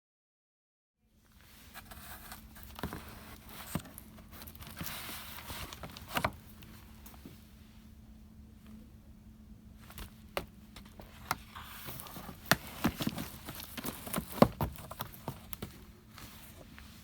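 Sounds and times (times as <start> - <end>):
low steady hum: 1.0 - 17.0
handling rustling: 1.4 - 7.4, 9.8 - 17.0.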